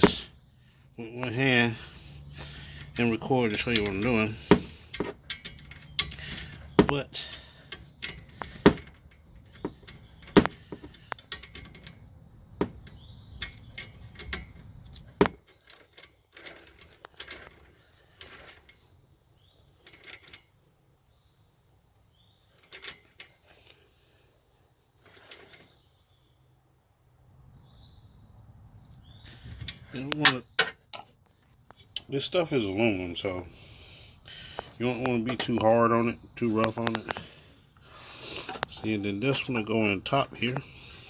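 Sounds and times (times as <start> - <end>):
rustles and scrapes: 1.3 - 20.6, 22.4 - 24.3, 24.9 - 26.0, 31.0 - 41.0
tools clicking and knocking: 3.6 - 18.8, 19.8 - 20.5, 22.6 - 23.7, 38.4 - 38.9.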